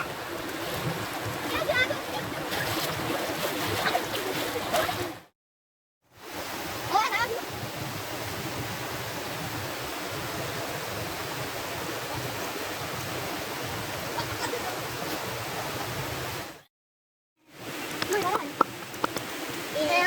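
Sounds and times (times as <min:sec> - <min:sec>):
waterfall rushing: 0:00.0 - 0:05.2.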